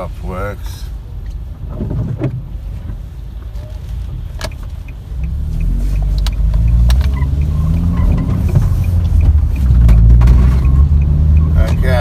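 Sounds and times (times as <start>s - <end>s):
car engine and road rumble: 0.0s - 12.0s
faint regular ticking: 4.4s - 12.0s.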